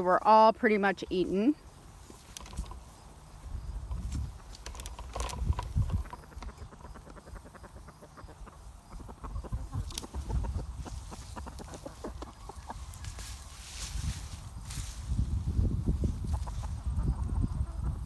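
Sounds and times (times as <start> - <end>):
small clicks and knocks: 2.1 - 2.9, 3.9 - 7.2.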